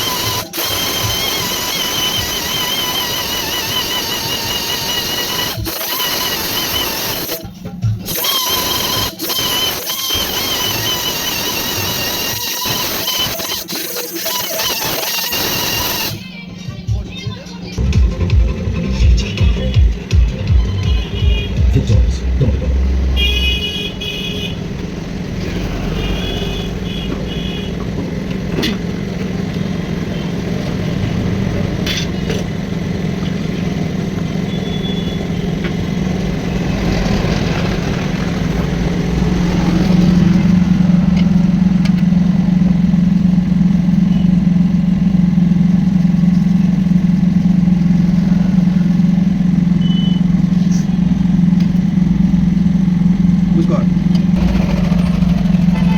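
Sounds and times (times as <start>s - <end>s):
machine motor humming: 0.0s - 55.9s
short high-pitched beeps: 49.8s - 50.3s.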